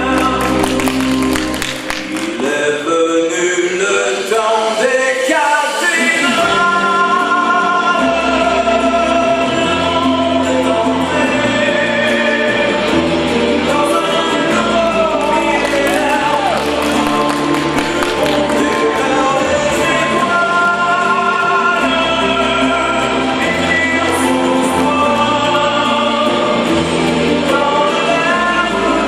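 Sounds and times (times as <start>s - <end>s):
song with sustained singing: 0.0s - 29.0s.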